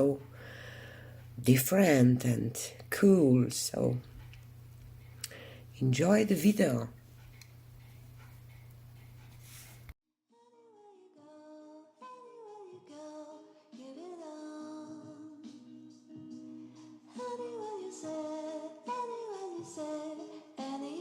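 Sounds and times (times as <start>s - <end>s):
woman singing with music: 0.0s - 0.6s, 10.3s - 21.0s.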